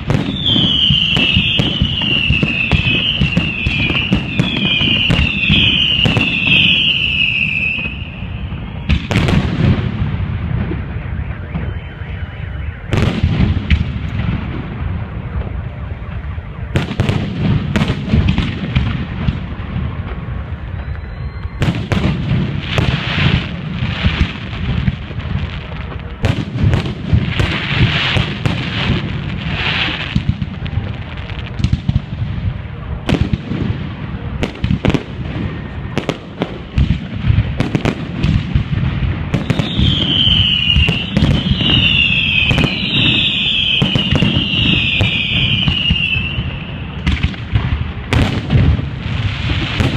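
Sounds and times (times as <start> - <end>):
fireworks bursting in loud bangs: 0.0 - 12.0, 12.6 - 49.9
whistling rockets: 0.0 - 32.2, 33.0 - 49.9
low rumble and crackle: 8.4 - 39.4.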